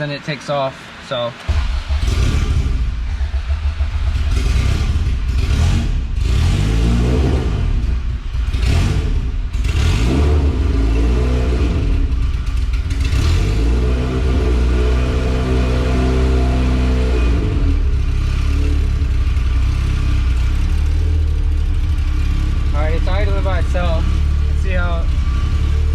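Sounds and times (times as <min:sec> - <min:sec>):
car engine idling unevenly: 0:00.0 - 0:06.6, 0:15.4 - 0:25.9.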